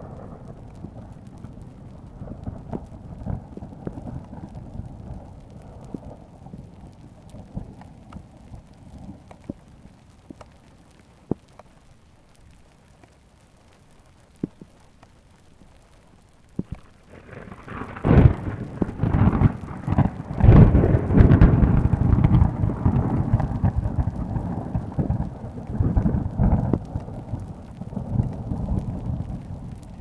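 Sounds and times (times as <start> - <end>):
thunder rumbling: 0.0 - 10.0, 16.6 - 30.0
light rain: 0.0 - 30.0.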